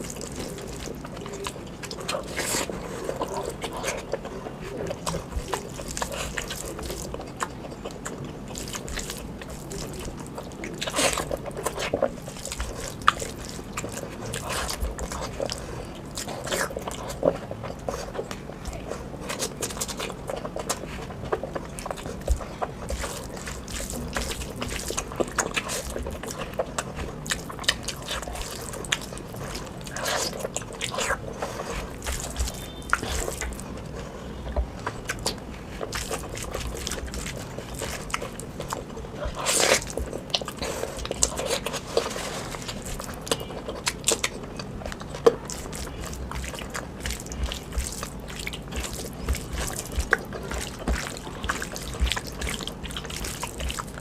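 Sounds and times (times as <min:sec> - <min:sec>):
wet chewing and lip-smacking: 0:00.0 - 0:54.0.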